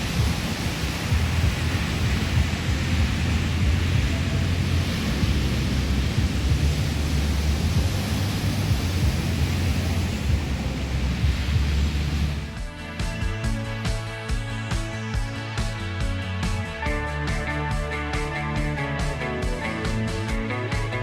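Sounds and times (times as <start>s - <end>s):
wind buffeting microphone: 0.0s - 12.6s.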